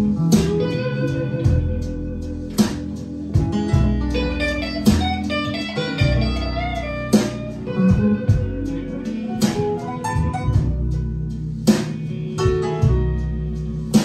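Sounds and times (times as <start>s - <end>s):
low bass line: 0.0s - 14.0s
plucked guitar: 0.0s - 14.0s
sharp percussive hit: 4.9s - 5.4s.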